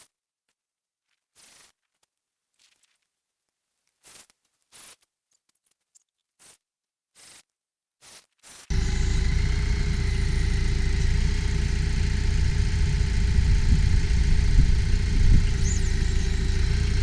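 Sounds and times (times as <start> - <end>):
engine idling: 8.7 - 17.0.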